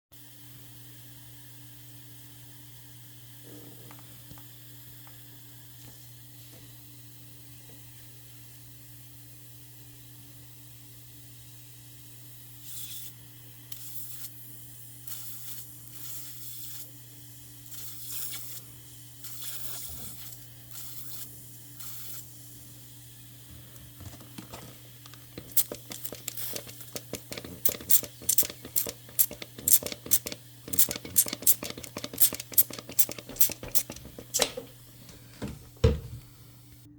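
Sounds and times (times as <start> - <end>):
rapid scratching and clicking: 24.4 - 34.5.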